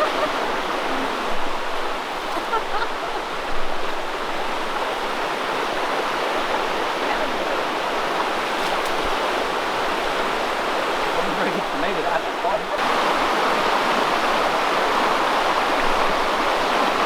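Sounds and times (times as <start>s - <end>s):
flowing water rushing: 0.0s - 17.0s.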